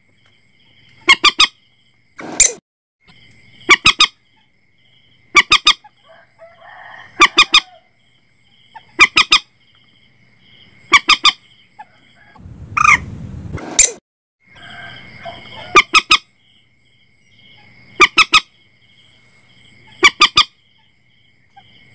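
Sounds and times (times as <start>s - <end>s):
moorhen harsh calls: 1.0s - 1.6s, 3.6s - 4.4s, 5.3s - 6.0s, 6.6s - 7.9s, 8.7s - 9.5s, 10.9s - 13.1s, 14.6s - 16.4s, 17.6s - 18.6s, 19.8s - 20.6s
rustling noise: 12.4s - 14.0s.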